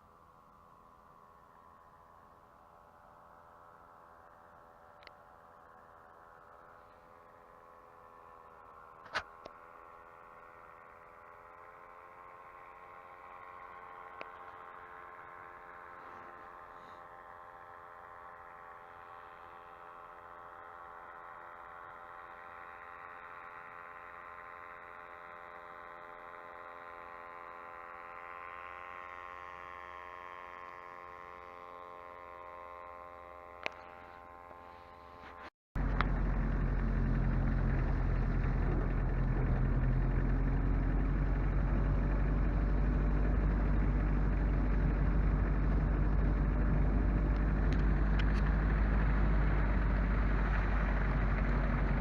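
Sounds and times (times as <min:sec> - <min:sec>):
vehicle engine humming: 0:00.0 - 0:52.0
heavy low rumble: 0:35.8 - 0:52.0.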